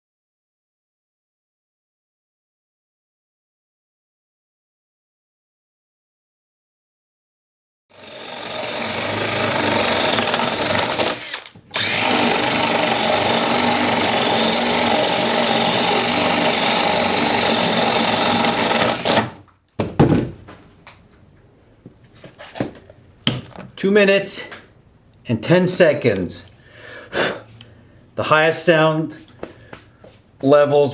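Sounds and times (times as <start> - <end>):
cordless drill boring through wood: 7.9 - 19.4
knocks: 19.2 - 20.6.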